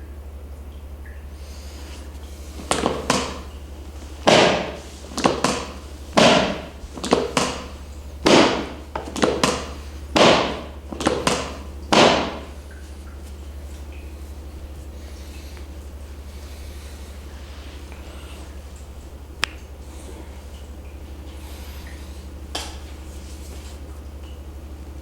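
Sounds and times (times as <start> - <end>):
sharp strikes: 4.3 - 7.6.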